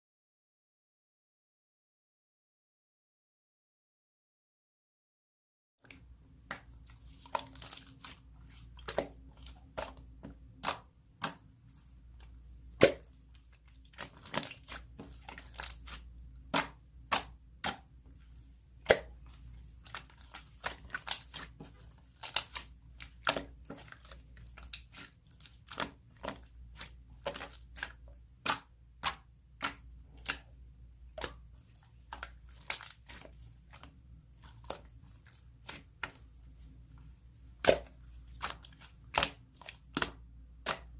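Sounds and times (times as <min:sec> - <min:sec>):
faint steady hum: 0:05.9 - 0:40.9.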